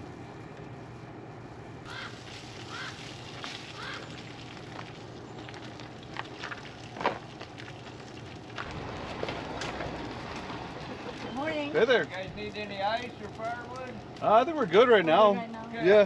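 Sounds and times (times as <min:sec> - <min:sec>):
short bird calls: 0:01.9 - 0:03.1, 0:03.7 - 0:04.2.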